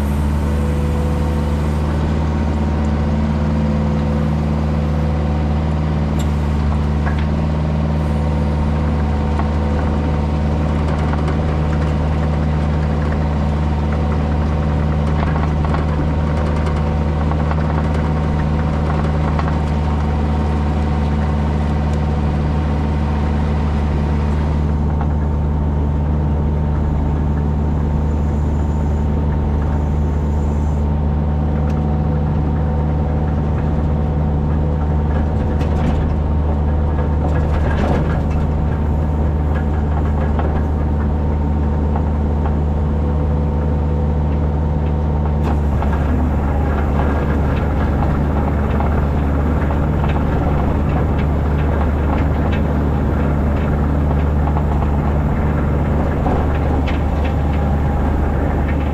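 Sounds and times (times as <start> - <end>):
tractor engine humming: 0.0 - 58.9
rough noisy clatter: 31.5 - 58.9.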